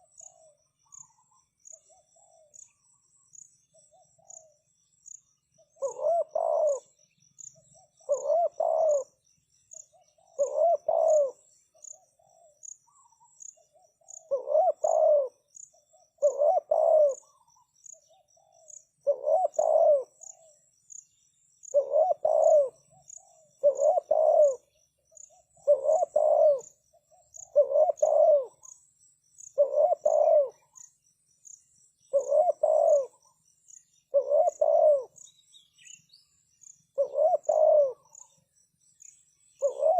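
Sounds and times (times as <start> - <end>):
dove cooing: 0.0 - 2.8, 5.7 - 7.0, 7.7 - 9.2, 9.9 - 20.6, 21.7 - 28.8, 29.6 - 30.9, 32.1 - 33.4, 34.1 - 35.3, 36.9 - 38.4, 39.6 - 39.9
faint insect chirping: 0.0 - 39.9.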